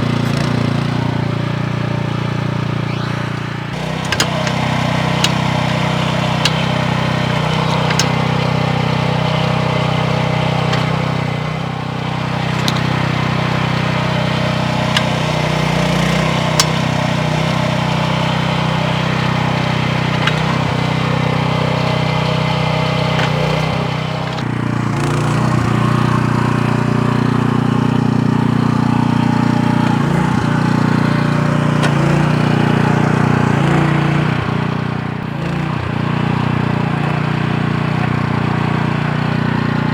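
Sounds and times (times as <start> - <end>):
mini excavator engine running: 0.0 - 39.9
sharp metal clanks: 2.9 - 18.1.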